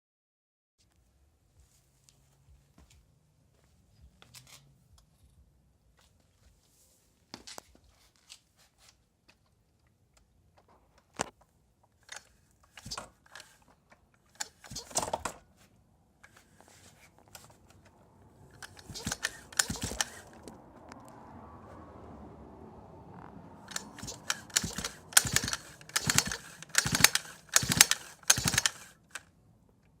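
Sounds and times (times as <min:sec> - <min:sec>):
pull-start cord rasping: 0:18.5 - 0:20.5, 0:23.6 - 0:29.3.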